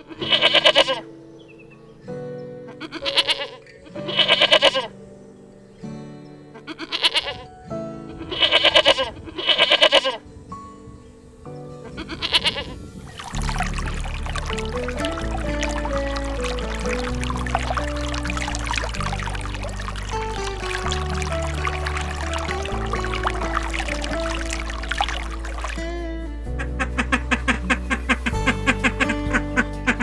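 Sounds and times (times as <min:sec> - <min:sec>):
background music with held notes: 0:00.0 - 0:30.0
sheep bleating: 0:02.8 - 0:04.9, 0:06.6 - 0:07.5.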